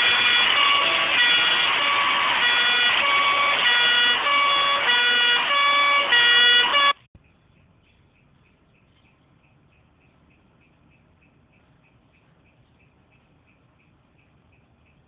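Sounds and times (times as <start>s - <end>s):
distorted horn-like melody: 0.0s - 7.0s.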